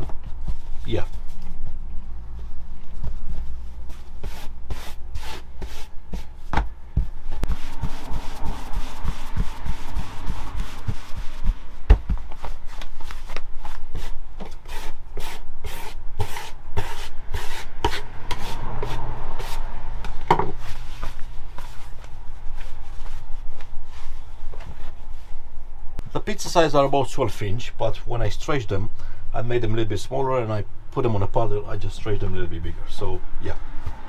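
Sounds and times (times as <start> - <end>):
hands patting dough: 2.9 - 17.0.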